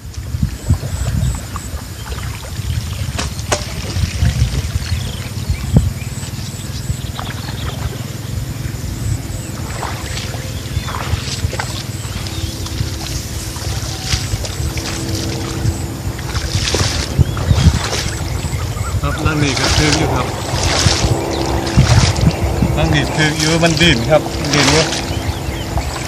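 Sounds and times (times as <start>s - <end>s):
water sloshing and trickling: 0.0s - 26.0s.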